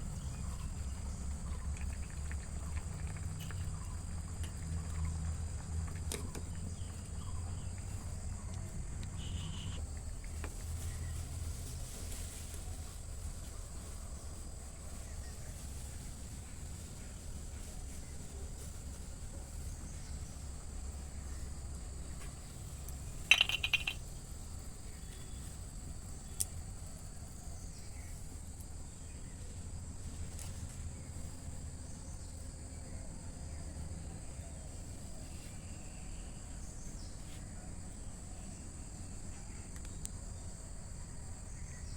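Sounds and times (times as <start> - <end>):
light metallic clinks: 23.3 - 24.1.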